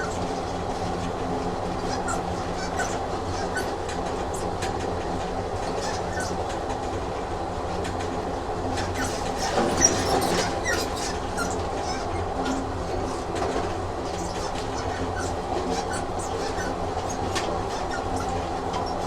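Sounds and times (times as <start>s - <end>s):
wheel squeal: 0.0s - 6.6s, 8.8s - 19.0s
train rumbling on rails: 0.0s - 19.0s
wheels clicking over rail joints: 0.0s - 19.0s.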